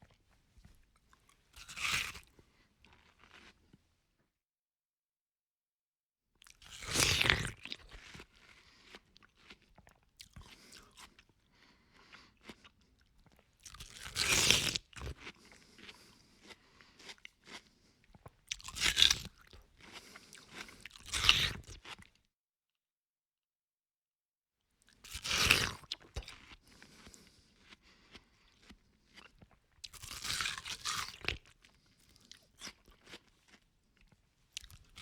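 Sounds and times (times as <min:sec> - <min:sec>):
crunching watermelon bites: 0:01.5 - 0:03.8, 0:06.6 - 0:11.2, 0:13.3 - 0:22.1, 0:25.0 - 0:35.0.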